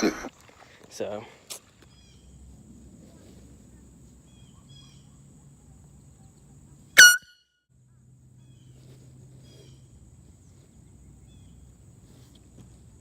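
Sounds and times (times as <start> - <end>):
faint outdoor background: 0.0 - 13.0
loud air horn blast: 7.0 - 7.3.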